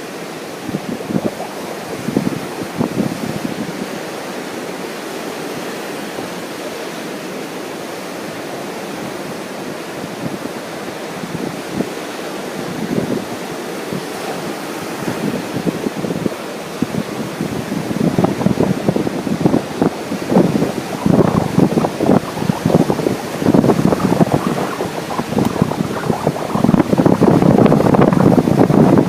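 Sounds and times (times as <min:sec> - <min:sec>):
wind buffeting microphone: 0:00.0 - 0:04.4, 0:12.6 - 0:29.0
ocean surf washing ashore: 0:00.0 - 0:29.0.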